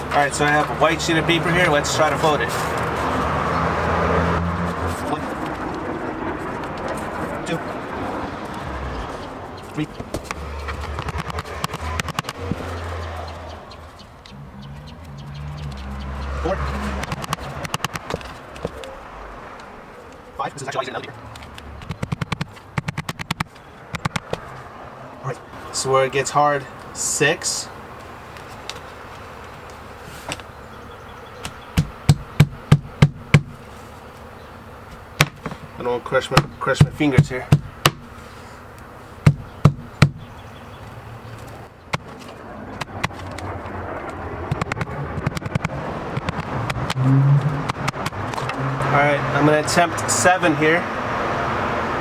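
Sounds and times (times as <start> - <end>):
paper being folded and creased: 4.7 - 13.0, 28.2 - 30.5
sledgehammer tapping paper: 10.0 - 12.8, 17.0 - 18.9, 21.5 - 24.5, 31.4 - 33.7, 35.0 - 38.2, 39.2 - 40.2, 44.5 - 48.6.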